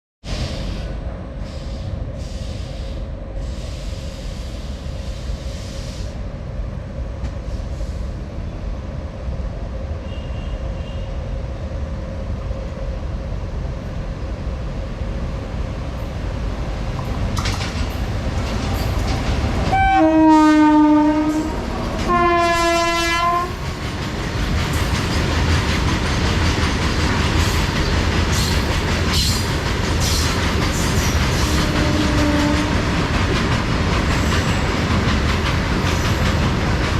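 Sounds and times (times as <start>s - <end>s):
electric locomotive rumble: 0.2s - 36.9s
train horn blasts: 10.0s - 11.1s, 19.7s - 23.6s, 31.5s - 32.9s
wagons rattling on rails: 17.2s - 19.7s, 23.6s - 36.9s.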